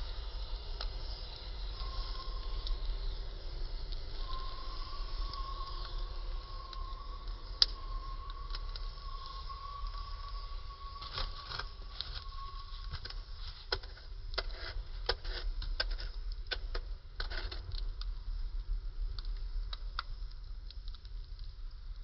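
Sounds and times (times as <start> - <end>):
faint steady tone: 0.0 - 17.1
fire crackling and popping: 0.0 - 22.0
low fire rumble: 0.0 - 22.0.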